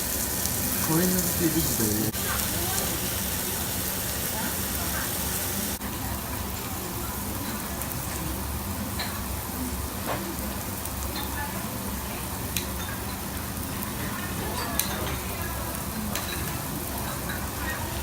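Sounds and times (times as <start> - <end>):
beef sizzling on a grill: 0.0 - 18.0.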